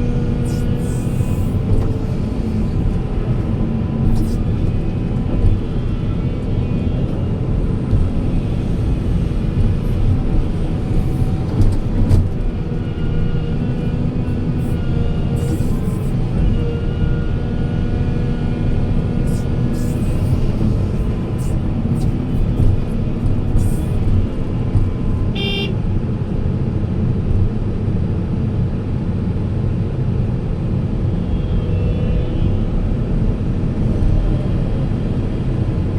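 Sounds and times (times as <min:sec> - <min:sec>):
diesel machinery rumbling: 0:00.0 - 0:27.8
short high horn toot: 0:25.1 - 0:25.8.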